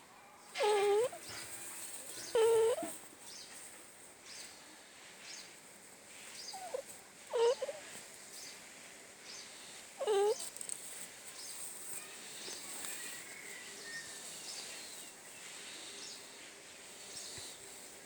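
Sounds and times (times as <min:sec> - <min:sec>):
dog whining: 0:00.6 - 0:01.2, 0:02.3 - 0:03.0, 0:06.5 - 0:07.9, 0:10.0 - 0:10.4.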